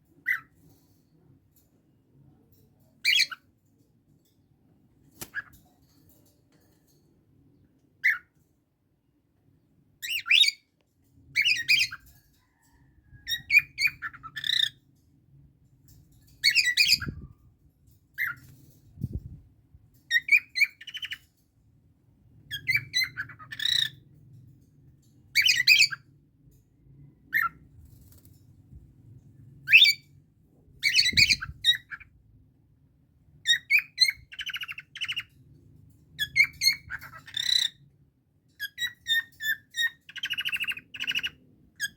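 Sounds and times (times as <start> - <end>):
parrots squawking and chirping: 0.2 - 0.6, 10.0 - 10.6, 11.4 - 12.3, 13.2 - 14.8, 16.3 - 17.2, 22.5 - 24.0, 29.7 - 30.0, 30.8 - 32.1, 33.4 - 35.3, 36.2 - 37.8, 38.6 - 41.9.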